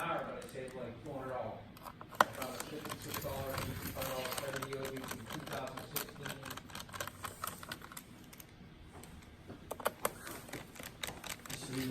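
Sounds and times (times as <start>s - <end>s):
laptop keyboard typing: 2.1s - 8.5s, 9.1s - 11.9s.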